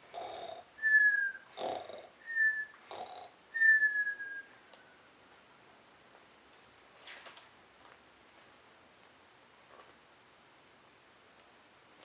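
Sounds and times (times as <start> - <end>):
person imitating cartoon snoring: 0.0 - 0.7, 1.5 - 2.1, 2.8 - 3.4.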